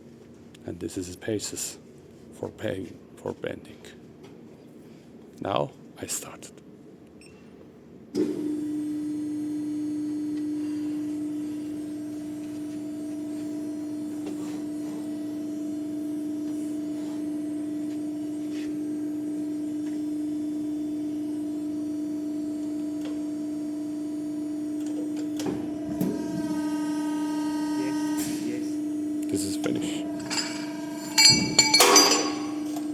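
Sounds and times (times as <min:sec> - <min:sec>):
press brake machine hum: 0:08.1 - 0:32.9
machine knocks: 0:30.2 - 0:32.8.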